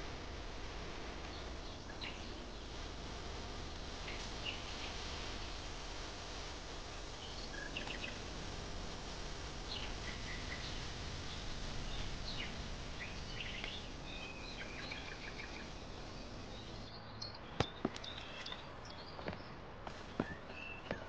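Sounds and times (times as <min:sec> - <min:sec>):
steady hiss: 0:00.0 - 0:21.0
small birds chirping: 0:01.2 - 0:02.8, 0:04.0 - 0:05.6, 0:06.9 - 0:08.3, 0:09.6 - 0:21.0.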